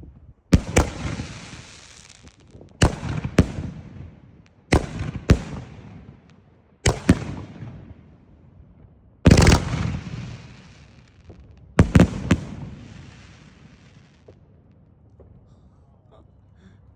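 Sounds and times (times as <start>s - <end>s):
firework cake bangs: 9.3s - 14.4s.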